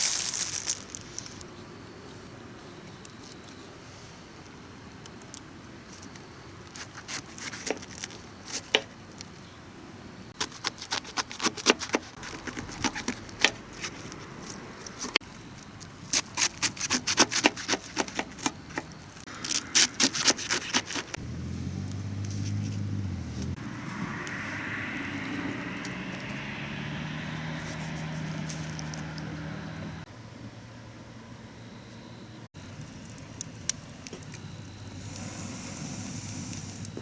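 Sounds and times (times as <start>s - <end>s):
vehicle engine hum: 12.1s - 15.9s, 21.0s - 31.8s.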